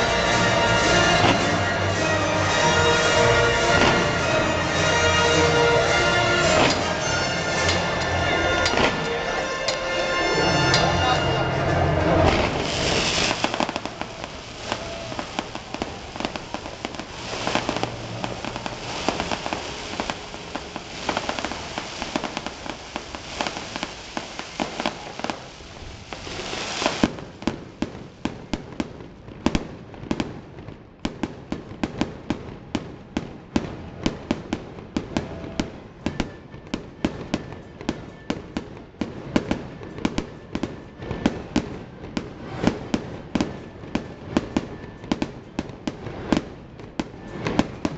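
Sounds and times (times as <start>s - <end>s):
fireworks crackling and banging: 0.0s - 47.9s.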